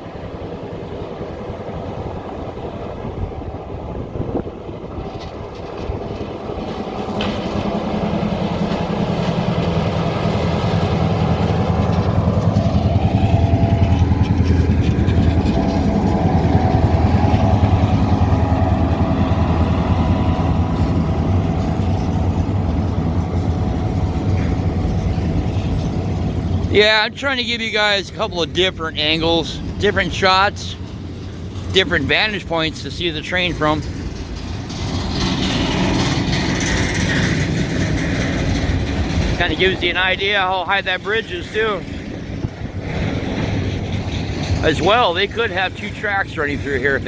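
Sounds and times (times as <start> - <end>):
diesel locomotive engine drone: 0.0 - 47.0.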